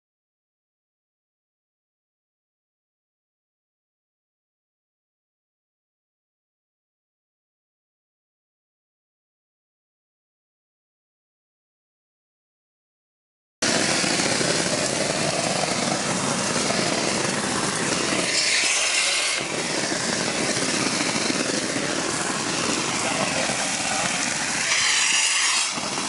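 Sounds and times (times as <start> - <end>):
machinery rumble: 13.6 - 26.0
rising hiss: 13.6 - 26.0.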